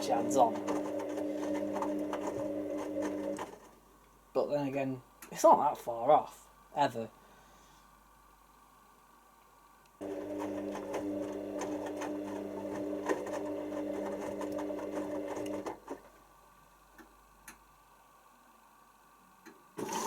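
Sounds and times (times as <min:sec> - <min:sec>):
washing machine drum whirring: 0:00.0 - 0:03.7, 0:10.0 - 0:15.8.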